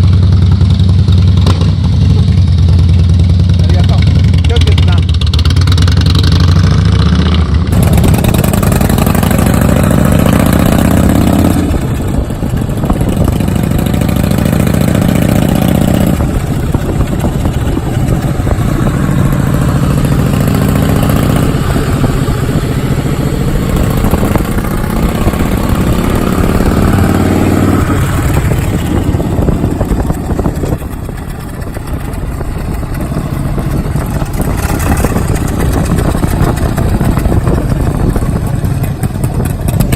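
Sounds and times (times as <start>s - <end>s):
motorcycle exhaust accelerating: 0.0s - 39.9s.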